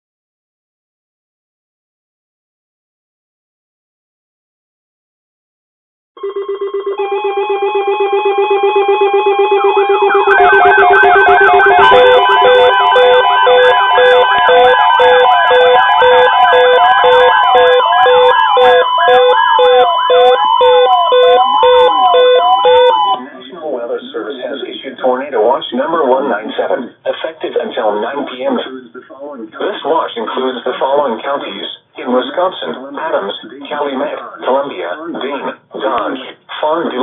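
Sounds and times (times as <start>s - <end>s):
pulsing electronic alert tones: 6.2s - 23.2s
siren-like rising and falling sweep: 6.2s - 23.2s
steady beeping: 6.2s - 23.4s.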